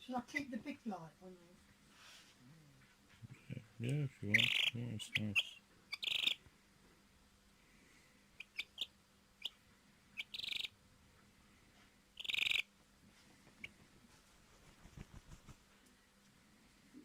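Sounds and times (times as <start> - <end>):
hen peeping softly: 3.6 - 6.5, 8.3 - 10.8, 12.2 - 12.7
hen trilled calls: 4.2 - 6.4, 8.4 - 9.6, 10.2 - 10.8, 12.2 - 12.7.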